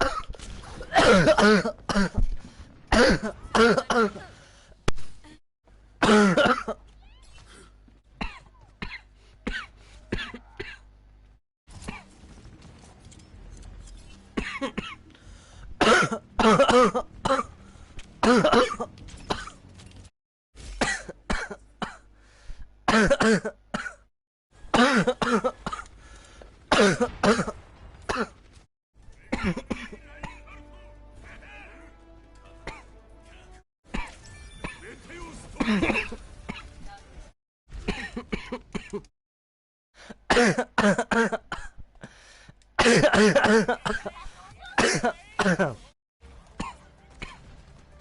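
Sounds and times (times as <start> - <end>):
person coughing hard: 0.9 - 2.2, 2.9 - 4.3, 6.0 - 6.8, 8.2 - 10.8, 15.8 - 17.5, 18.2 - 19.5, 20.8 - 22.0, 22.9 - 24.0, 24.7 - 25.9, 26.7 - 28.3, 29.3 - 31.6, 32.6 - 32.9, 35.6 - 36.7, 40.3 - 41.8, 42.8 - 44.1, 44.8 - 45.8.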